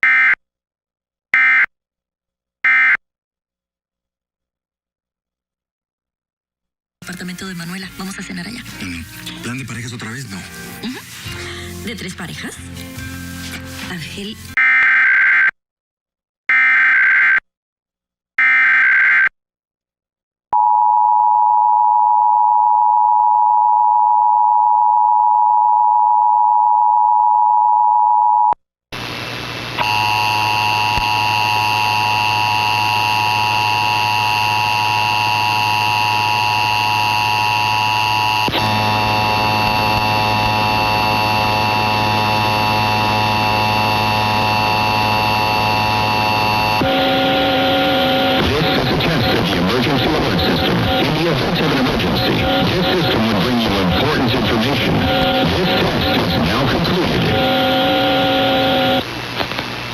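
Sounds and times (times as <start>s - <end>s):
screeching data bursts: 53.9s - 59.0s.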